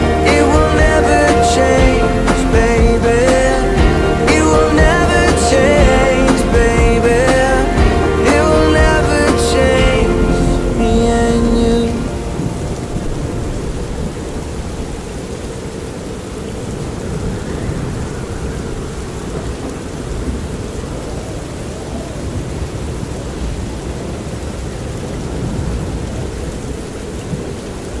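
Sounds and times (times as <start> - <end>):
rain: 0.0 - 28.0
wind: 9.7 - 28.0.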